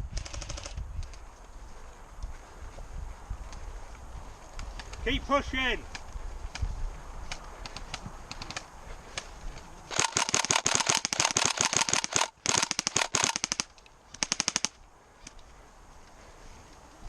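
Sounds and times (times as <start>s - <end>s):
airsoft gun firing bursts: 0.1s - 0.8s, 9.9s - 14.8s.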